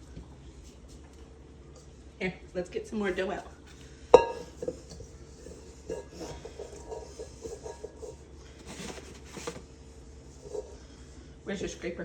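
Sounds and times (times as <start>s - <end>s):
dough scraping on surface: 4.5s - 9.6s.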